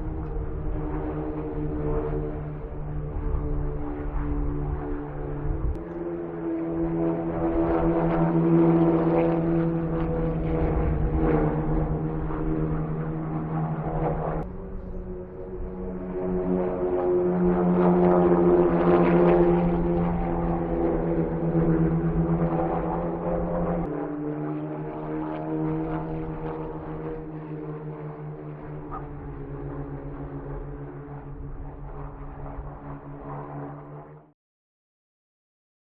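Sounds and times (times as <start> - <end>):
racecar engine running steadily: 0.0 - 24.0, 25.8 - 33.2.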